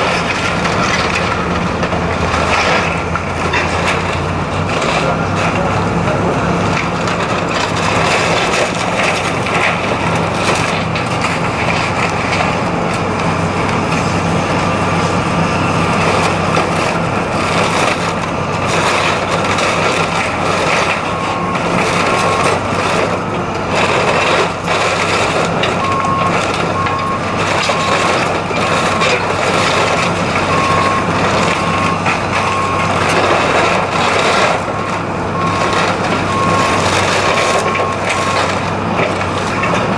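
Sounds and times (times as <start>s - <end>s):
crushing and cracking: 0.0s - 39.9s
heavy machinery engine running: 0.0s - 39.9s
backup alarm beeping: 30.5s - 33.0s.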